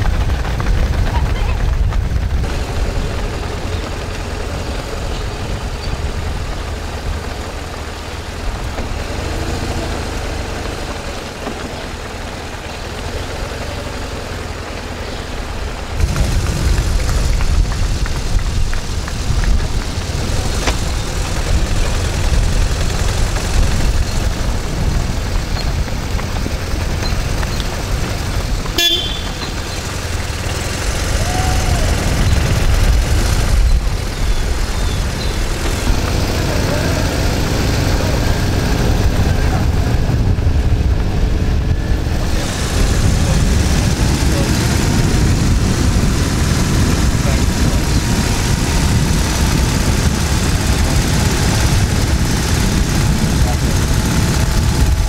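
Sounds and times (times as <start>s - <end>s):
low outdoor rumble: 0.0s - 55.0s
short high-pitched toot: 28.8s - 29.6s.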